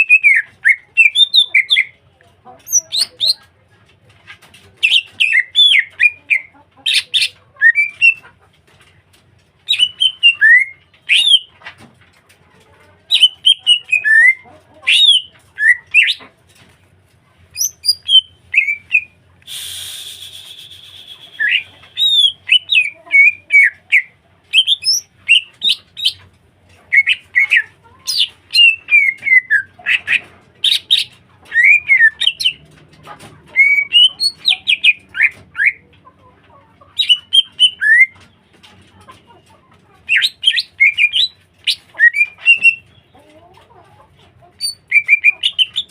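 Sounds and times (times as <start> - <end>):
bird singing whistled phrases: 7.6 - 8.2, 17.6 - 26.2, 27.0 - 29.7, 30.7 - 32.5, 33.6 - 35.8, 37.0 - 38.2, 40.1 - 42.8, 44.6 - 45.8.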